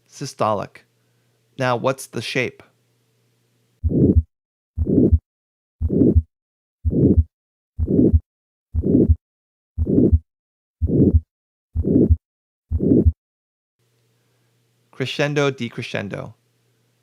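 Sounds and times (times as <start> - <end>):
heartbeat with harsh murmur: 3.8 - 5.2, 5.8 - 9.2, 9.8 - 10.2, 10.8 - 13.2.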